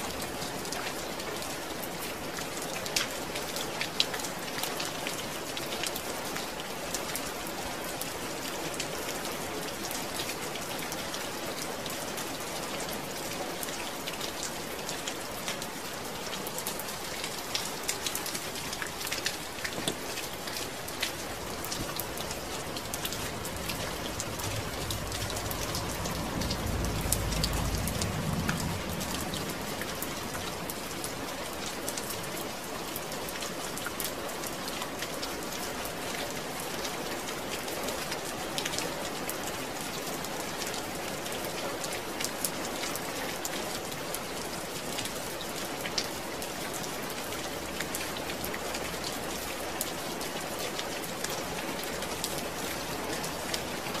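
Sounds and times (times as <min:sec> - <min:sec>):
rain pattering on a surface: 0:00.0 - 0:54.0
low rumble: 0:21.1 - 0:31.0.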